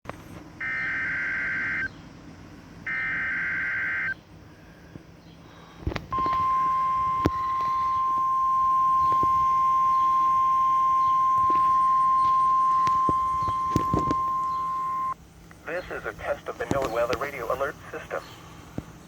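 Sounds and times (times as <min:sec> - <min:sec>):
steady high alarm tone: 0:00.6 - 0:01.9, 0:02.8 - 0:04.2, 0:06.1 - 0:15.2
faint radio clicks: 0:11.4 - 0:14.6, 0:15.4 - 0:18.9.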